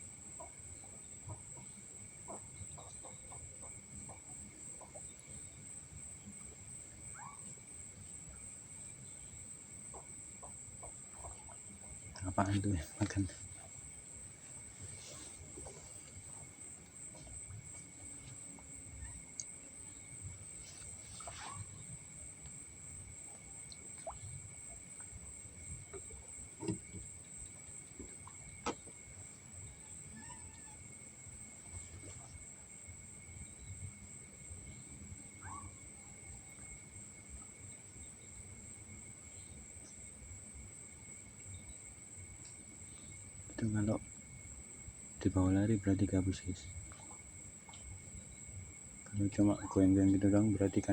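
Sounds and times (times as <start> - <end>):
lower steady insect trill: 0.0 - 50.9
faint clicks: 19.3 - 19.6, 23.6 - 24.3.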